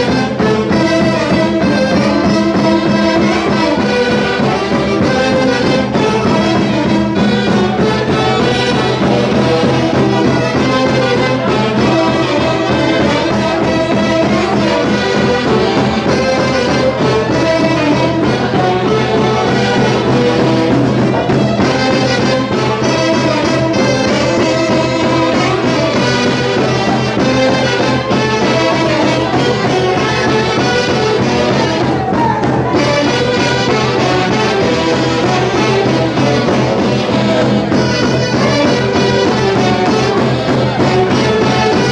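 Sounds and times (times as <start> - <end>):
folk orchestra playing: 0.0 - 41.9.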